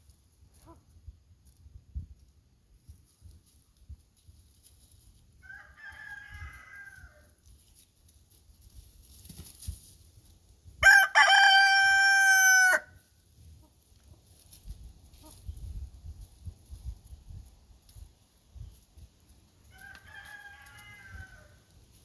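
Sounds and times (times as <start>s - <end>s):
rooster crowing: 5.4s - 7.2s, 10.8s - 12.9s, 19.7s - 21.6s.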